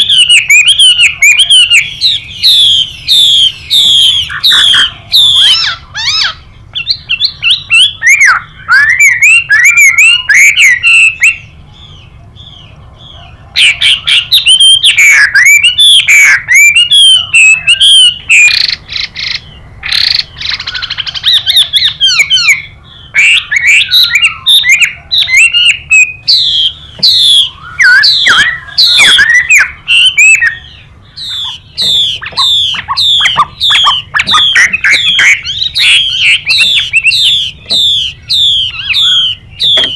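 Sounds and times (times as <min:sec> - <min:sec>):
bird singing whistled phrases: 0:00.0 - 0:39.9
bird harsh hissing calls: 0:25.5 - 0:39.9.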